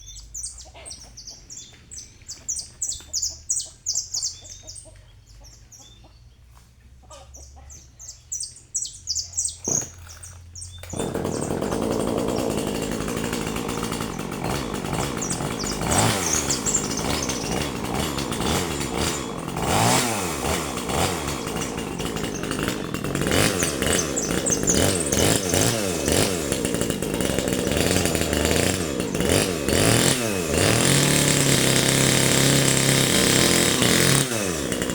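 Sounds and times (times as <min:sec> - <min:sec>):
birds chirping: 0:00.0 - 0:30.9
chainsaw revving: 0:09.6 - 0:34.9.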